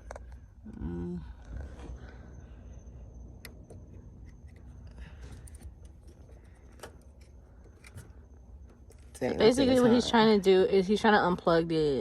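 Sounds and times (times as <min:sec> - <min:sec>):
low steady rumble: 0:00.0 - 0:12.0.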